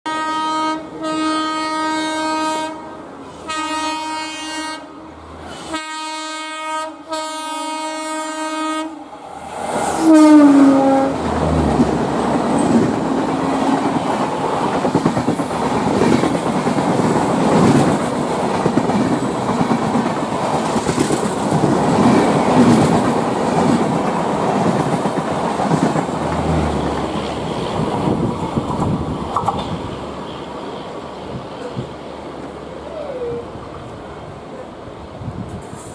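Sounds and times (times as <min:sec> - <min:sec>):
locomotive horn blasts: 0:00.1 - 0:04.9, 0:05.7 - 0:09.0, 0:10.0 - 0:11.2
train wheels rumbling on track: 0:00.7 - 0:35.9.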